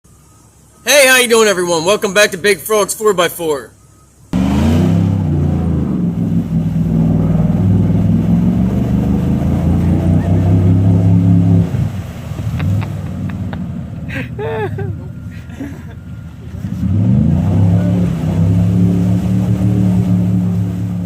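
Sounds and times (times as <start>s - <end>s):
vehicle engine revving: 4.3s - 14.3s, 16.0s - 21.0s.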